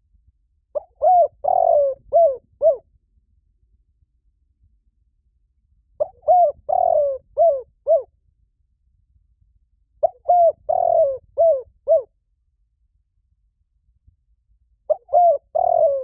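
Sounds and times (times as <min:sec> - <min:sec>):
dove cooing: 0:00.8 - 0:02.8, 0:06.0 - 0:08.1, 0:10.0 - 0:12.1, 0:14.9 - 0:16.0.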